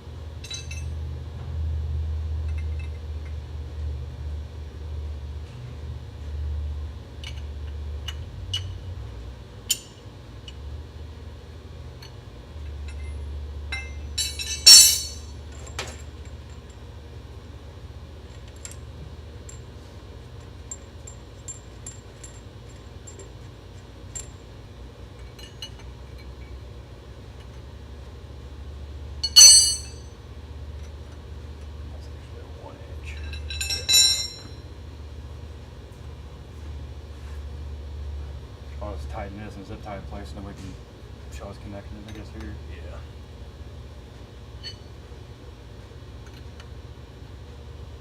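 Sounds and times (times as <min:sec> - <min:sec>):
metal tools clinking: 0:13.8 - 0:15.3, 0:29.2 - 0:30.0, 0:33.1 - 0:34.5
metallic clatter: 0:14.2 - 0:15.3, 0:29.2 - 0:30.0.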